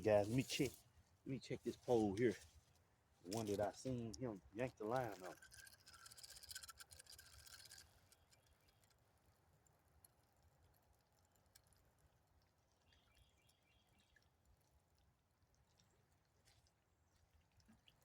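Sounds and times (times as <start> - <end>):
faint ticks: 5.0 - 18.0.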